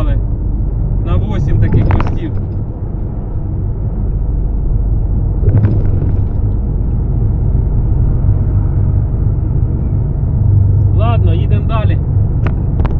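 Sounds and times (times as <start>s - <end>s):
road noise: 0.0s - 12.9s
truck engine rumble: 0.0s - 12.9s.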